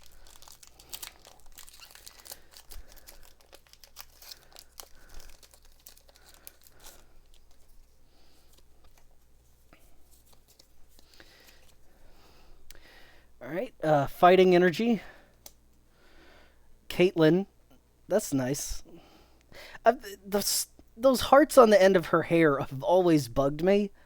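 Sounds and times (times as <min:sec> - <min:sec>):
packaging torn and crinkled: 0:00.0 - 0:09.0.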